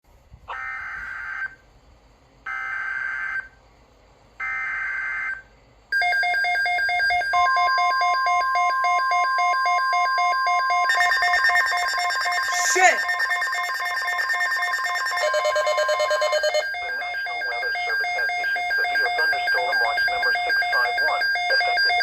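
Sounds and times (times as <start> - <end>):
steady warning tone: 4.4 - 22.0
rapidly pulsing alarm beep: 6.0 - 22.0
screeching digital data tones: 6.0 - 22.0.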